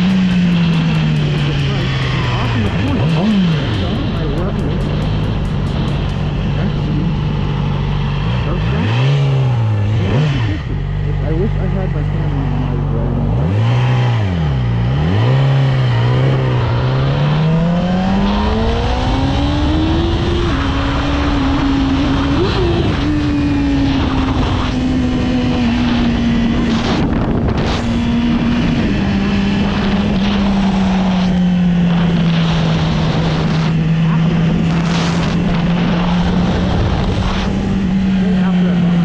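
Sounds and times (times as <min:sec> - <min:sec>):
motorcycle engine accelerating: 0:00.0 - 0:39.0
wind rushing over microphone: 0:11.9 - 0:39.0.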